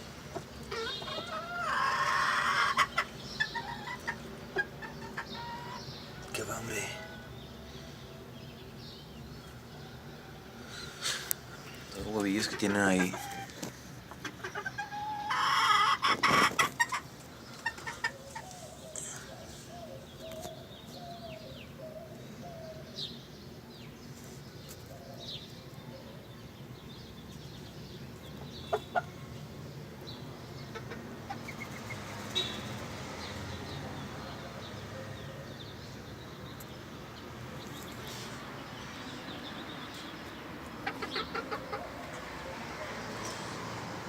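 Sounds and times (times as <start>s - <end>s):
chickens clucking: 0.1s - 7.3s, 10.8s - 21.0s, 27.3s - 32.5s, 39.8s - 43.4s.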